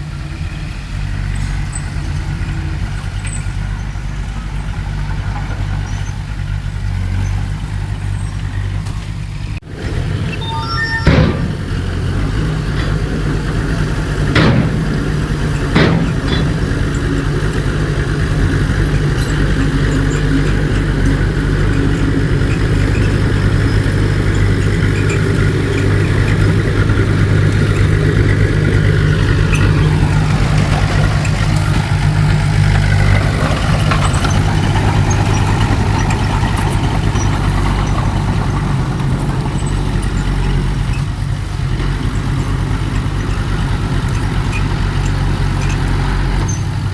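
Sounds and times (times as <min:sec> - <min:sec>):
heavy diesel engine running: 0:00.0 - 0:46.9
sharp metallic knocks: 0:10.4 - 0:40.8.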